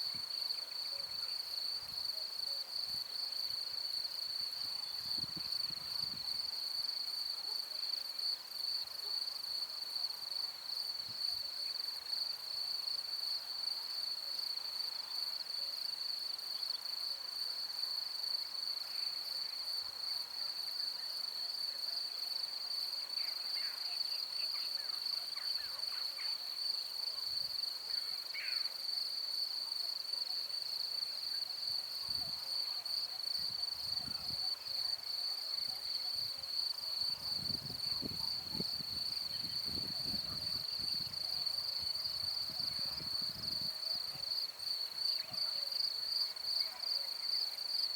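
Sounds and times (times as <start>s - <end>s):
crickets trilling: 35.8s - 45.2s.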